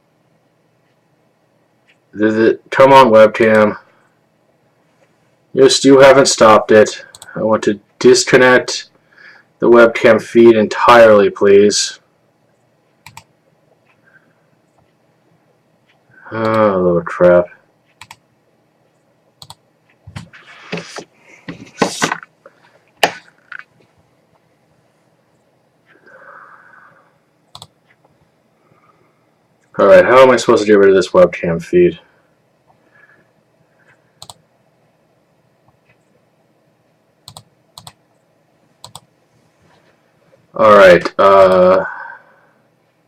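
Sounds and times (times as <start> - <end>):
computer keyboard clicking: 13.0 - 13.3, 17.9 - 18.2, 19.4 - 20.3, 27.5 - 28.0, 34.2 - 34.4, 37.2 - 38.0, 38.8 - 39.1.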